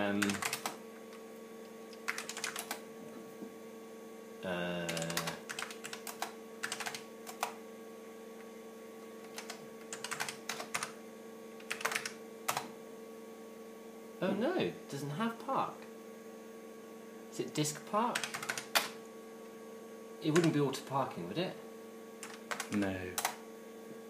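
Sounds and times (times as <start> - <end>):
steady hum: 0.0 - 24.0
keyboard keystrokes clacking: 0.2 - 0.8, 2.0 - 2.8, 4.9 - 7.5, 9.3 - 10.9, 11.6 - 12.7, 18.2 - 18.9, 22.2 - 23.4.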